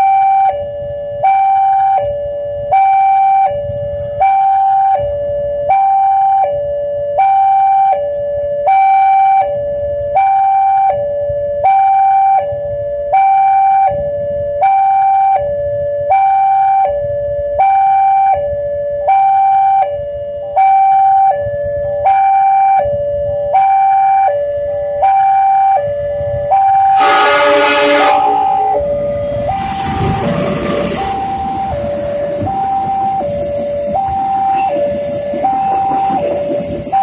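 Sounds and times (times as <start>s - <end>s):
loud train noise: 0.0s - 37.0s
two-tone level crossing alarm: 0.0s - 37.0s.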